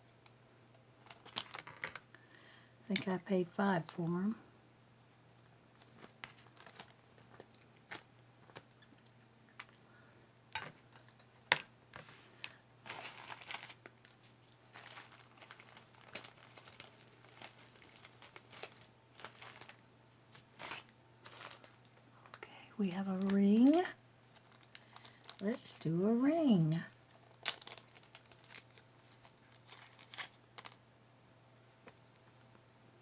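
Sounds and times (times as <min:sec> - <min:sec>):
packaging crinkling and rustling: 0:01.0 - 0:02.2, 0:05.7 - 0:08.9, 0:12.0 - 0:25.9, 0:26.5 - 0:30.8.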